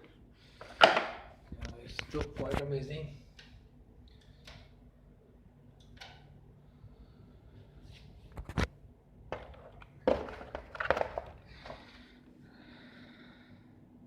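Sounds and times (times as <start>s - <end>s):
packaging rustling: 9.3s - 12.0s.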